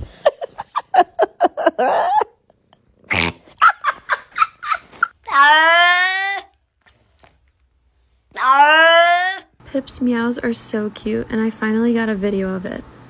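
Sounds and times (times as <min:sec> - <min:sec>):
cat snort: 0:03.1 - 0:03.5.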